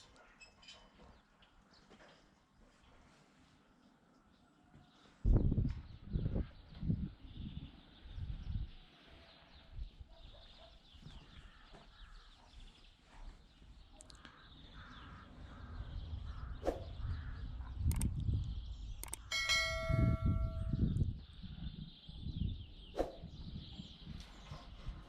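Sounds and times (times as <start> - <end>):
sharp clicks: 17.8 - 19.3
ringing metallic clang: 19.3 - 20.9.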